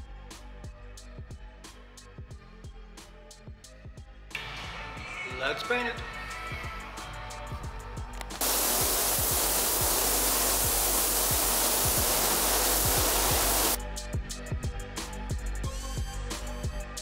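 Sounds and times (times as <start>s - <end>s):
background music with steady beat: 0.0s - 17.0s
paint spray gun hissing: 8.4s - 13.8s.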